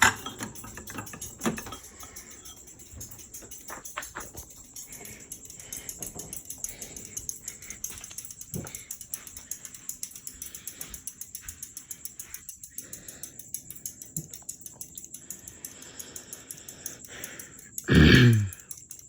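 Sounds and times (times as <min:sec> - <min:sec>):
ceiling fan rapid ticking: 0:00.0 - 0:19.0.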